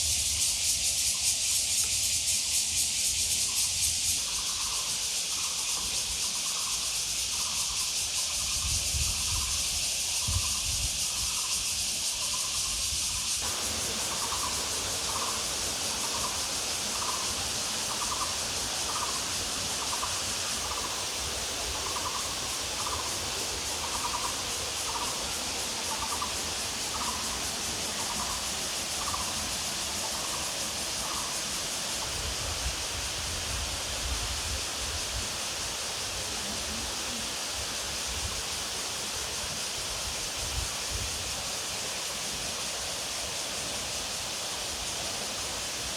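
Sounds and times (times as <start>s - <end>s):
stream rushing: 13.4s - 45.9s.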